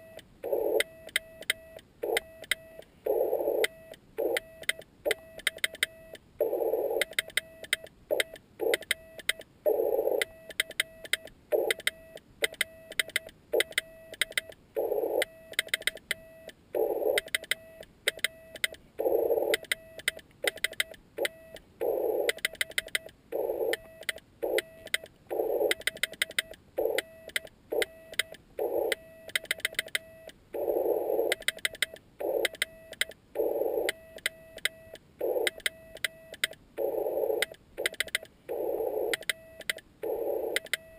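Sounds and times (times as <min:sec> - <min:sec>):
sharp clicks: 0:00.2 - 0:02.7, 0:03.5 - 0:06.2, 0:07.0 - 0:09.5, 0:10.1 - 0:14.6, 0:15.2 - 0:18.8, 0:19.4 - 0:21.6, 0:22.2 - 0:40.9
morse code tone: 0:32.2 - 0:40.9.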